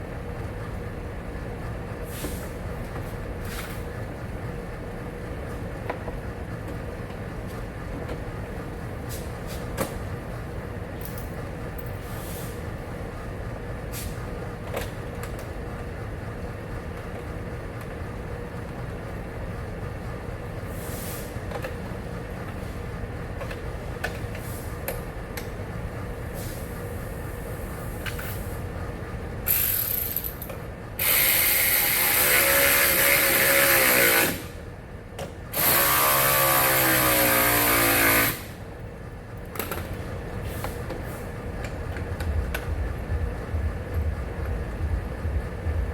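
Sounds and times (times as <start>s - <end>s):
power drill running: 31.0s - 34.5s, 35.5s - 38.5s
low hum: 41.6s - 45.9s.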